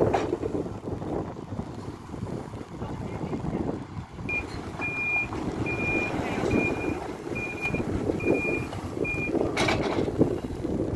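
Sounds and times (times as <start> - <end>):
diesel engine running: 0.0 - 10.9
reversing alarm beeping: 4.3 - 9.4.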